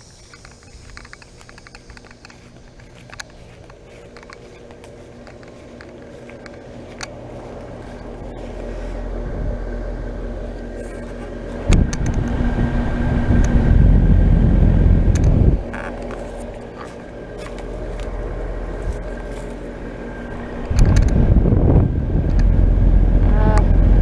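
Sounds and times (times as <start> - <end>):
heat pump humming: 0.0 - 24.0
wind buffeting microphone: 0.0 - 24.0.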